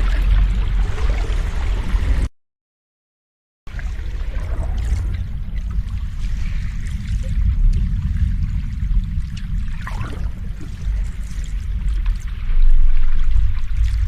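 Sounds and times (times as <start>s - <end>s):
deep rumble: 0.0s - 2.3s, 3.7s - 14.0s
ocean waves washing on shore: 3.7s - 14.0s.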